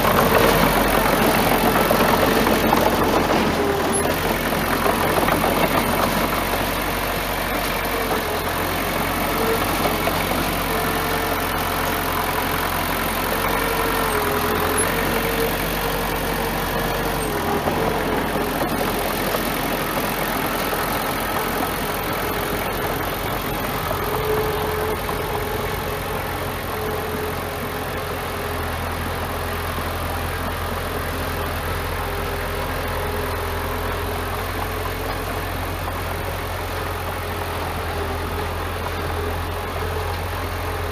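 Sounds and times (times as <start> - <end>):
bulldozer diesel engine running: 0.0 - 40.9.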